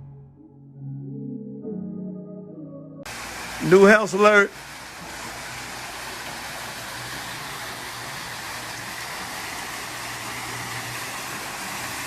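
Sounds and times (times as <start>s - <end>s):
water falling into pool: 3.1s - 12.0s.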